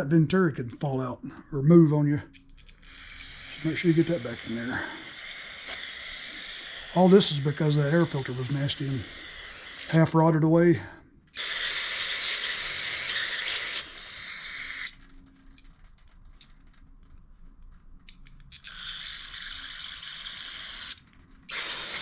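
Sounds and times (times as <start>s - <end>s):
pressurised spray hissing: 2.9s - 10.3s, 11.4s - 14.9s, 21.5s - 22.0s.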